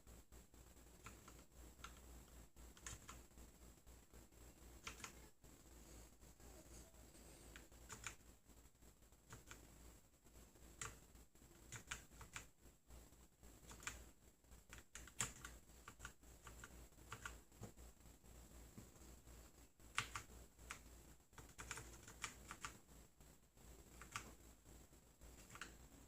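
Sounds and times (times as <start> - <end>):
computer keyboard typing: 1.0 - 2.1, 2.7 - 3.3, 4.8 - 5.3, 7.5 - 8.2, 9.2 - 9.7, 10.7 - 12.5, 13.6 - 17.4, 19.9 - 22.8, 23.9 - 24.4, 25.4 - 25.8.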